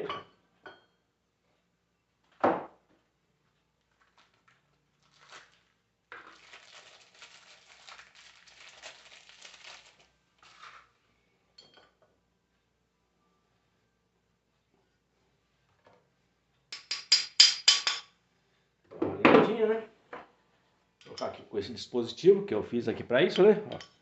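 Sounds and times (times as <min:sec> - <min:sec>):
crinkling and rustling: 0:02.2 - 0:11.0.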